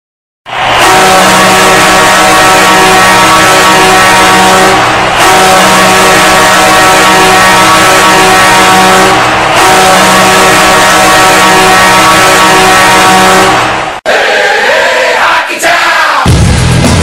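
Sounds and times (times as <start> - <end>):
arena goal horn blasts: 0.6 - 13.8.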